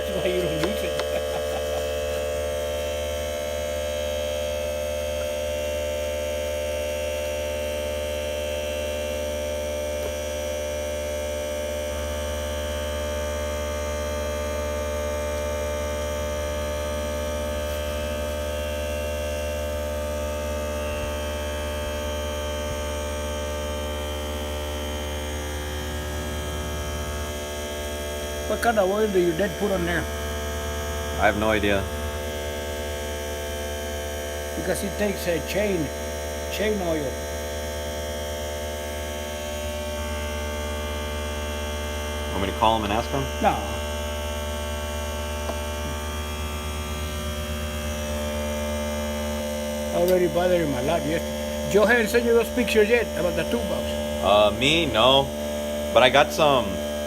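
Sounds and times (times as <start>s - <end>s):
electric motor humming: 0.0s - 8.0s, 14.6s - 57.0s.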